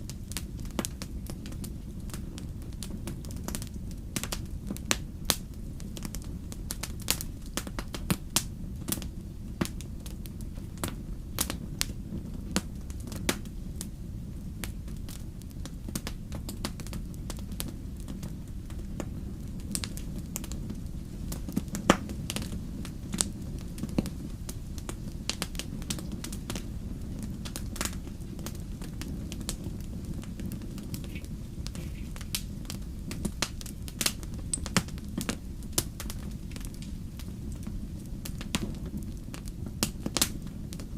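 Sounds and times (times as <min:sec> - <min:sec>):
campfire crackling and popping: 0:00.0 - 0:40.9
fire low rumble: 0:00.0 - 0:40.9.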